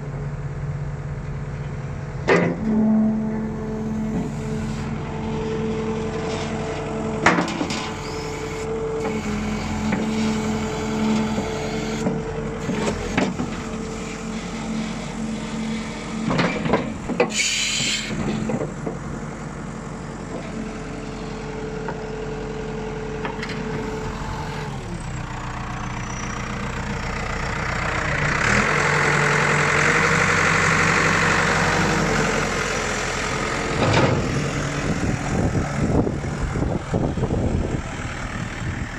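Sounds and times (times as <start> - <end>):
diesel engine running: 0.0 - 38.9
knocks and clunks: 2.2 - 2.8, 16.2 - 17.4, 33.8 - 34.4.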